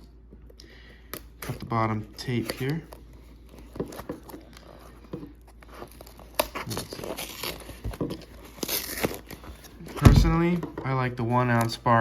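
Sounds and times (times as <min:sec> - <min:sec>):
cardboard rustling: 0:01.8 - 0:12.0
packing tape tearing: 0:05.5 - 0:10.4.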